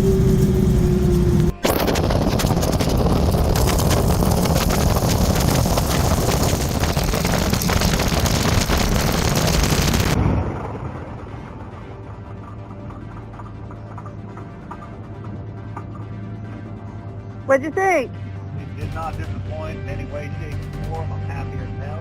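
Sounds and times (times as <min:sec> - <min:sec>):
radial engine and propeller drone: 0:00.0 - 0:07.3
wind rushing over microphone: 0:00.0 - 0:12.2.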